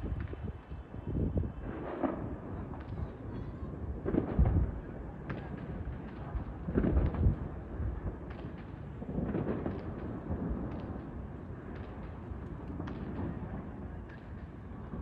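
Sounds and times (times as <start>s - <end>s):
fireworks crackling and popping: 0.0s - 15.0s
fireworks booming: 1.2s - 15.0s.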